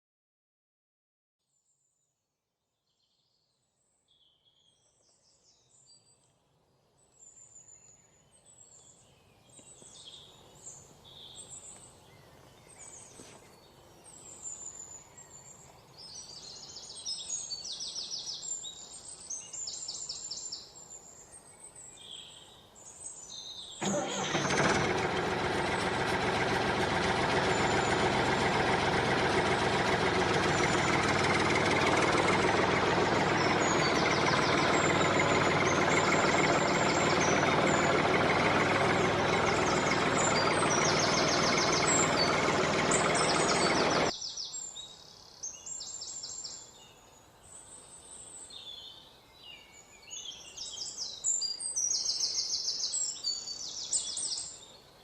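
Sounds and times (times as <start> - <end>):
birds chirping: 23.4 - 44.6
tractor engine running: 23.8 - 44.1.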